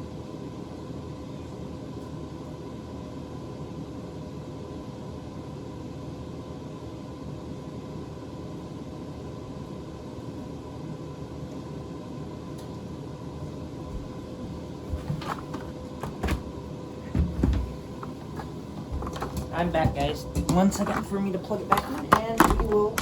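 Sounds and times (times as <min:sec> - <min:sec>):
background hum: 0:00.0 - 0:23.0
faint constant whine: 0:00.0 - 0:23.0
knocks and bumps: 0:14.9 - 0:23.0.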